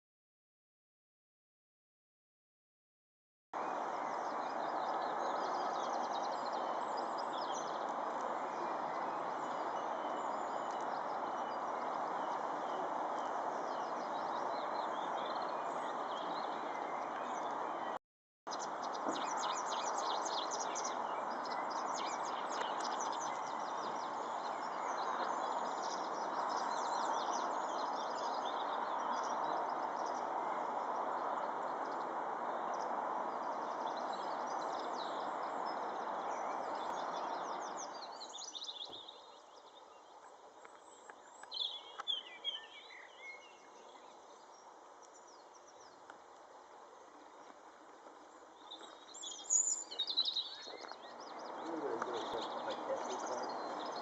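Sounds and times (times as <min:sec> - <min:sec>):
small birds chirping: 0:03.6 - 0:54.0.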